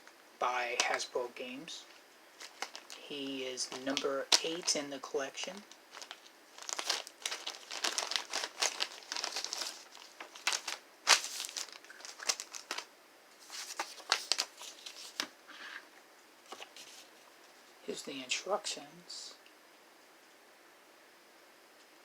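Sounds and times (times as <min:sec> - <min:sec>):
plastic packaging crinkling: 0:01.8 - 0:04.9, 0:05.6 - 0:15.3, 0:16.4 - 0:17.1.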